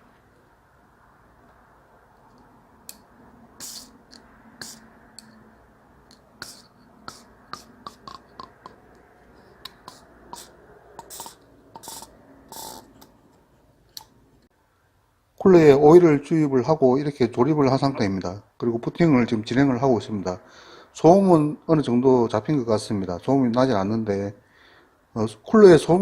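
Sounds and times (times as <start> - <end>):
brief hiss: 3.6 - 4.0.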